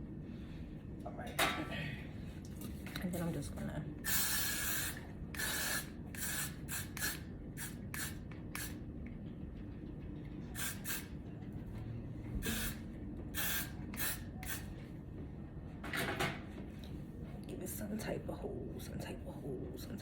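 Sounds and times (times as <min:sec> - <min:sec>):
hair spray hissing: 0:04.0 - 0:08.8, 0:10.6 - 0:11.1, 0:12.4 - 0:12.8, 0:13.4 - 0:14.6.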